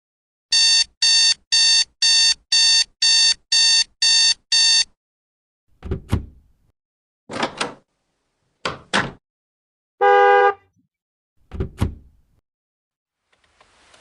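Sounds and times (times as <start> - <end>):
electronic alarm beeping: 0.5 - 4.9.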